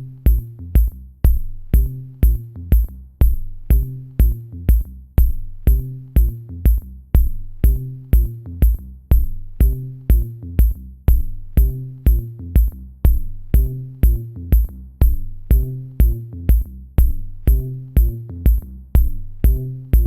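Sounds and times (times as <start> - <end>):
drum machine kick: 0.0 - 20.0
synth bass line: 0.0 - 20.0.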